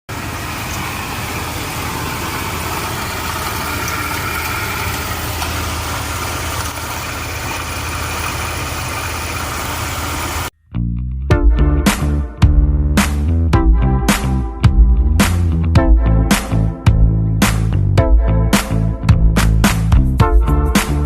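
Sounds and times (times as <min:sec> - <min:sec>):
truck engine idling: 0:00.1 - 0:10.5.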